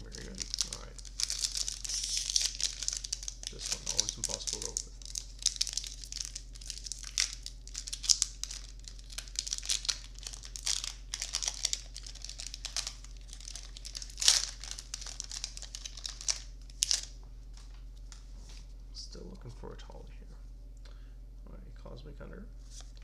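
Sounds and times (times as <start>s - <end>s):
foil wrapper crinkling and tearing: 0.0s - 18.3s.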